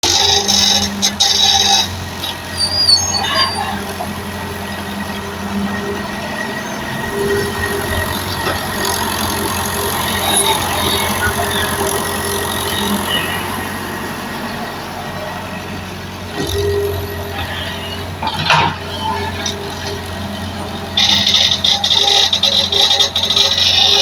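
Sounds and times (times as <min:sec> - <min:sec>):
mini excavator engine running: 0:00.0 - 0:24.0.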